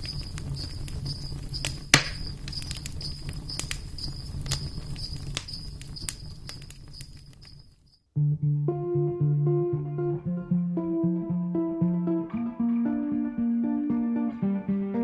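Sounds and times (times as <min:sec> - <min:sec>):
loud crack: 0:00.0 - 0:07.5
sharp clicks: 0:00.0 - 0:07.8
insects chirping: 0:00.0 - 0:08.1.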